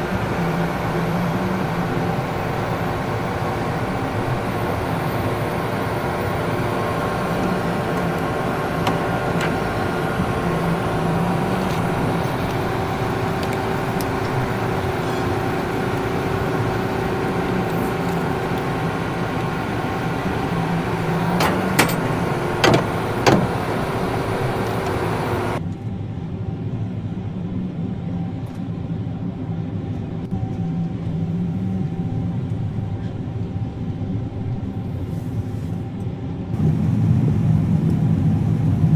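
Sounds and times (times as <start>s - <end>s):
heavy vehicle engine running: 0.0s - 25.6s, 36.5s - 38.9s.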